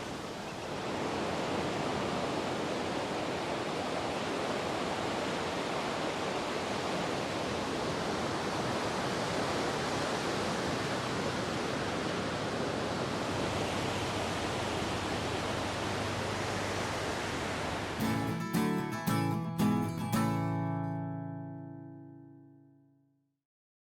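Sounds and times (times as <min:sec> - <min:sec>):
ocean surf washing on shore: 0:00.0 - 0:19.8
acoustic guitar strumming: 0:18.0 - 0:22.8.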